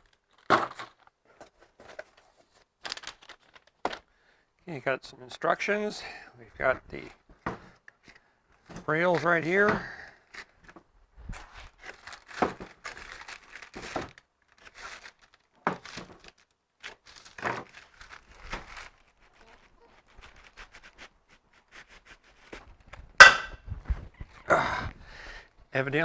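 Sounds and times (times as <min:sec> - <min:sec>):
packaging crinkling and rustling: 0:00.0 - 0:04.1, 0:10.2 - 0:23.1.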